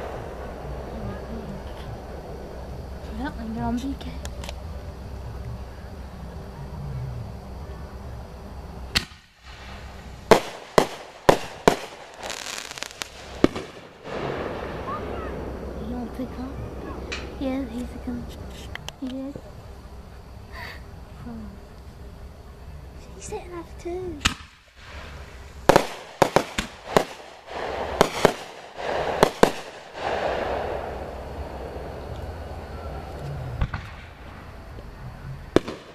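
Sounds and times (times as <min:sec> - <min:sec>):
fireworks bangs: 0:00.0 - 0:04.5, 0:08.9 - 0:19.3, 0:24.2 - 0:34.5, 0:35.5 - 0:35.9
small firework crackles: 0:00.0 - 0:06.2, 0:08.3 - 0:22.0, 0:22.9 - 0:35.9
fizzing crackling hiss: 0:09.0 - 0:19.3.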